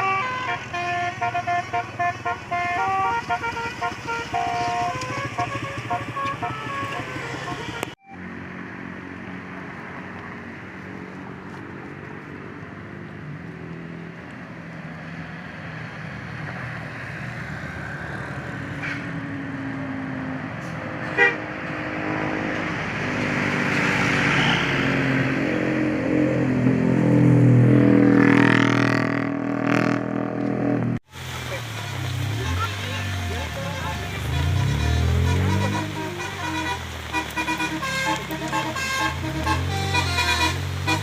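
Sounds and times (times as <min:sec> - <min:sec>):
multi-tone air horn tune: 0:00.0 - 0:08.2, 0:21.2 - 0:21.4, 0:31.8 - 0:41.0
bus engine: 0:00.0 - 0:41.0
road noise: 0:00.0 - 0:41.0.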